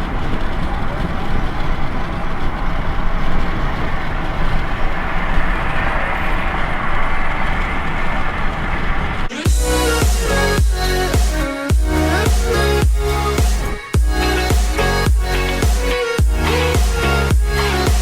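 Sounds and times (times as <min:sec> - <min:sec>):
rushing wind or traffic rumble: 0:00.0 - 0:18.0
electronic music with heavy beat: 0:09.3 - 0:18.0.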